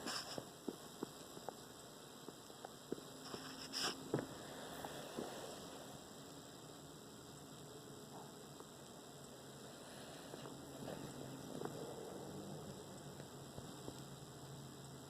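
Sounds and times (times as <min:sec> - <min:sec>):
faint electrical hum: 0:00.0 - 0:15.0
pet snoring softly: 0:03.2 - 0:06.0, 0:09.4 - 0:14.0.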